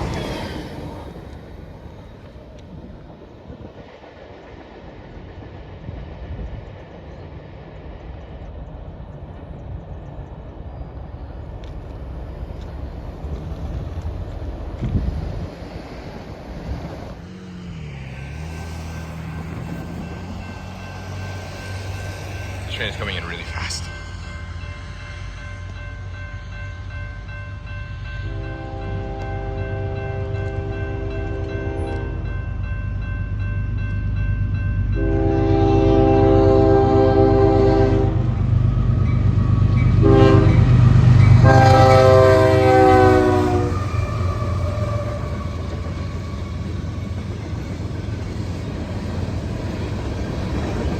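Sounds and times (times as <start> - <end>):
diesel locomotive engine drone: 0.0 - 50.9
passing train rumble: 0.0 - 50.9
wind noise on microphone: 13.2 - 17.1
locomotive air horn blasts: 28.3 - 32.0, 35.0 - 38.4, 40.0 - 40.6, 41.4 - 45.6.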